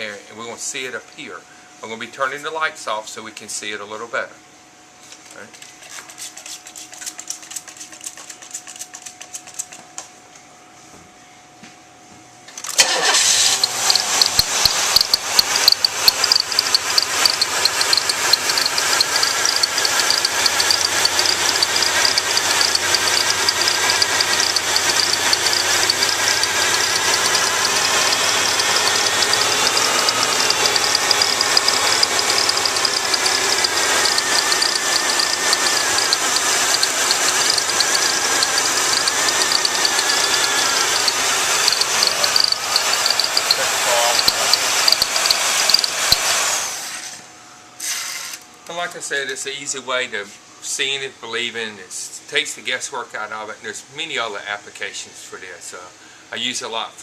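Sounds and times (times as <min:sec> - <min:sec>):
car engine running with misfire: 0:12.7 - 0:46.5
faint clicks: 0:13.9 - 0:43.6, 0:44.2 - 0:45.9.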